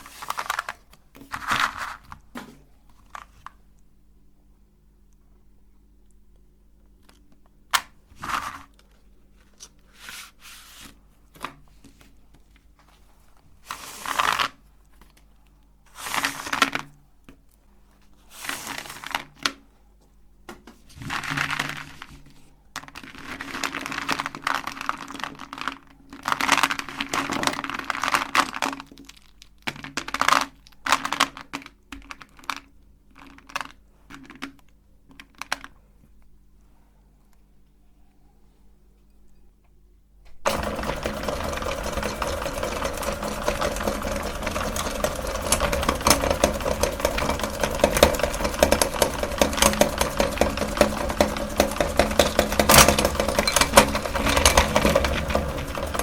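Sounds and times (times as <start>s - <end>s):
chocolate crunching in grinder: 8.1s - 9.0s, 15.9s - 17.0s, 22.8s - 33.8s, 40.5s - 56.0s
grinder motor humming: 40.5s - 56.0s.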